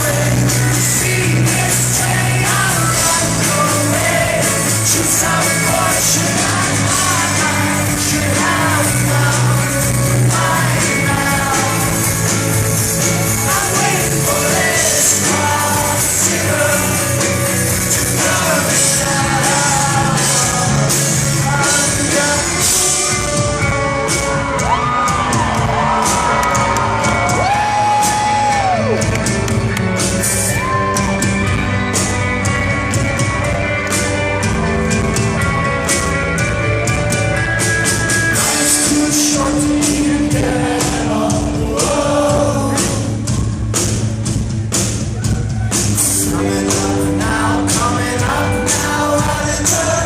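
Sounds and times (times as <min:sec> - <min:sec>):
person singing: 0:00.0 - 0:23.7, 0:38.3 - 0:43.4, 0:46.0 - 0:50.0
live rock band: 0:00.0 - 0:50.0.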